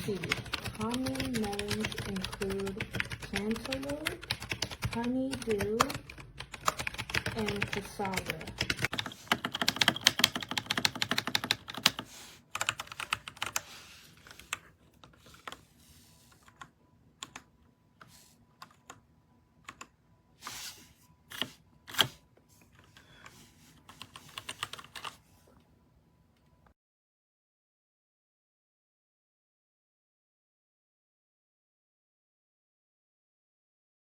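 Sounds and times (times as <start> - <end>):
mechanical keyboard typing: 0.0 - 15.6, 16.4 - 17.5, 18.6 - 19.0, 19.6 - 19.9, 23.9 - 25.2.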